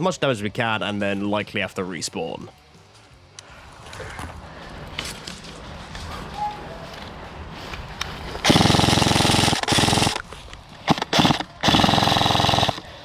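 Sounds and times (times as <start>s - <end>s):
airsoft gun firing bursts: 8.4s - 10.2s, 10.8s - 13.0s.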